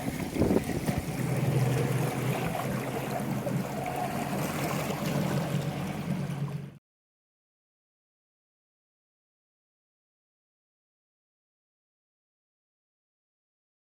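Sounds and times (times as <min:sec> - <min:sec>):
boat motor humming: 0:00.0 - 0:06.8
water and wind noise: 0:00.0 - 0:06.8.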